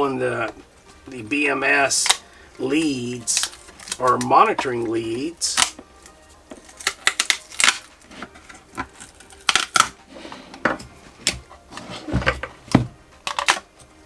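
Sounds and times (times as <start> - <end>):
clicks and crackles of parts: 2.0 - 2.3, 3.2 - 4.7, 5.5 - 11.5, 13.2 - 14.0
dull thumps: 10.6 - 13.0.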